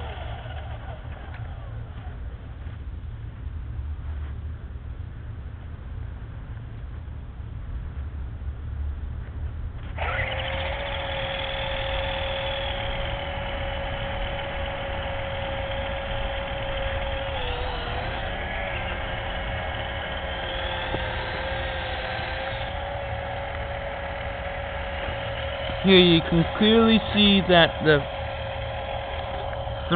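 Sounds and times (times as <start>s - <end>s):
electric helicopter rotors whining: 0.0s - 3.2s, 9.8s - 29.9s.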